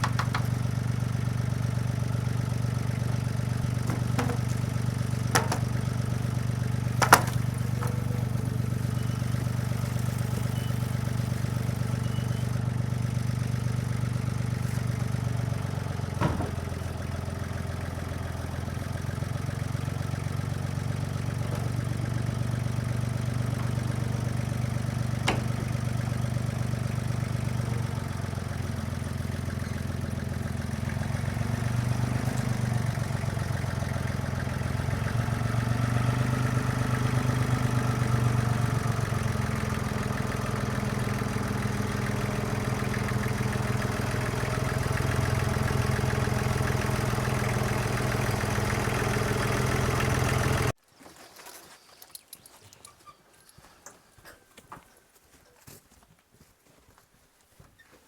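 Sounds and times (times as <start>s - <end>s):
sharp knocks and clanks: 0.0s - 0.8s, 3.6s - 8.8s, 14.9s - 17.0s, 23.2s - 26.4s
tractor diesel engine running: 0.0s - 50.8s.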